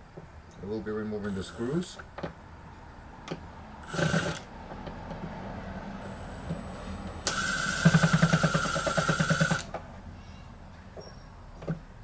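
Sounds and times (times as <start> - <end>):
electric screwdriver whine: 3.8 - 4.5, 6.0 - 9.7.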